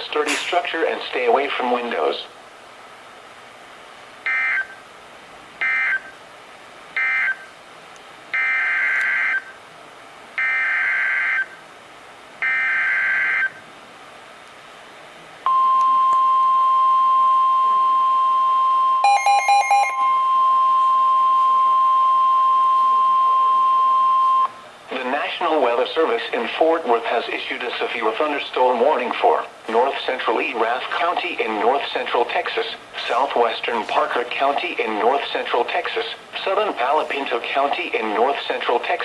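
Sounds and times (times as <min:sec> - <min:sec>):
pulsed beeps: 0:15.5 - 0:24.6
steady attention tone: 0:15.5 - 0:24.7.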